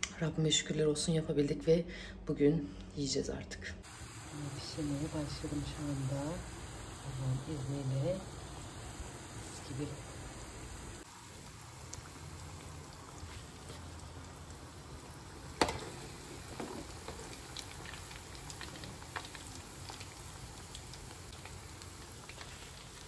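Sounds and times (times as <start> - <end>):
food sizzling in hot oil: 3.8 - 23.0
oil popping: 3.9 - 23.0.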